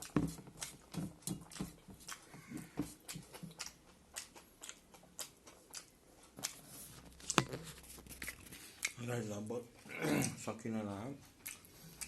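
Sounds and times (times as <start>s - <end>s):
person chewing food: 0.0s - 10.5s, 11.2s - 12.0s.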